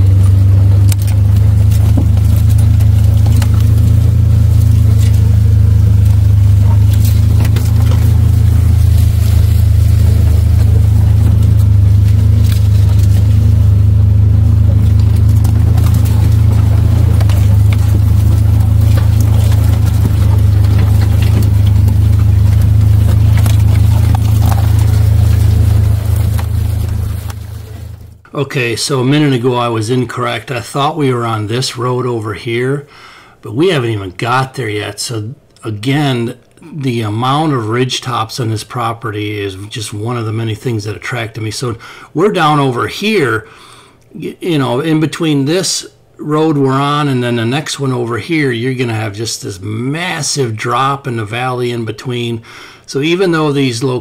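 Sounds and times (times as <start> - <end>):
knocks and rattles: 0.0 - 28.3
vehicle engine and tyres droning: 0.0 - 43.5.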